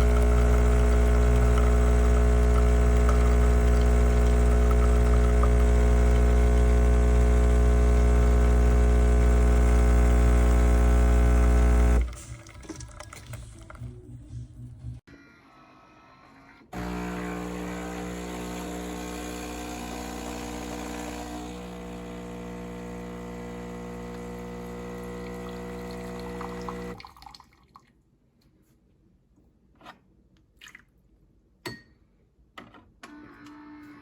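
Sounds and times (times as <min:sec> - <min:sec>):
espresso machine buzzing hum: 0:00.0 - 0:12.0, 0:16.8 - 0:27.0.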